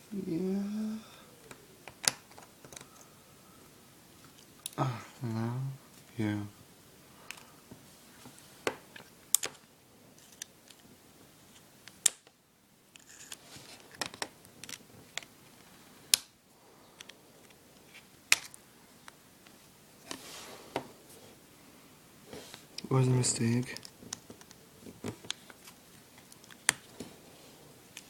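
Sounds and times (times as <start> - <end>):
small parts clicking and scraping: 10.2 - 10.8, 12.9 - 15.3.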